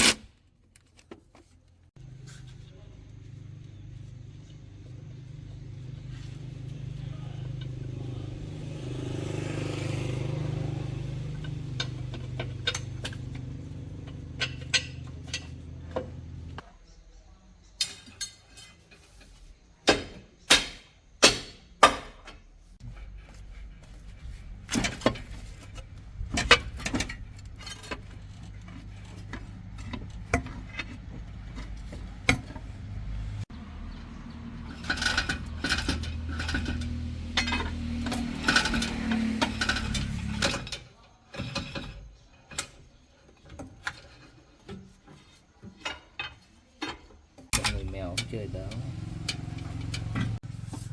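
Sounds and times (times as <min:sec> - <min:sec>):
truck engine humming: 0:02.0 - 0:16.6, 0:22.8 - 0:40.4, 0:47.6 - 0:50.9
sharp metal clanks: 0:11.3 - 0:16.2.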